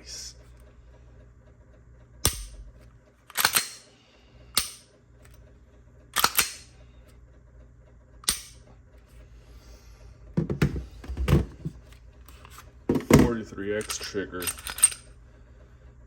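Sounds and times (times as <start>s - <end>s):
pistol slide racking: 3.3s - 3.8s, 6.2s - 6.7s, 8.2s - 8.6s, 13.8s - 15.1s
handling noise: 10.4s - 15.1s.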